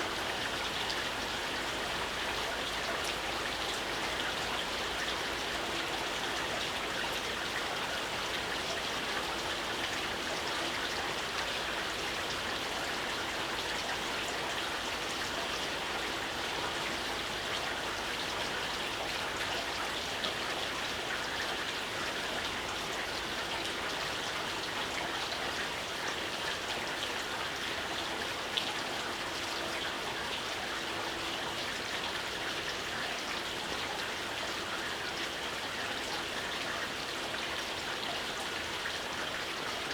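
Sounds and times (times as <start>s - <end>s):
gentle rain falling: 0.0s - 39.9s.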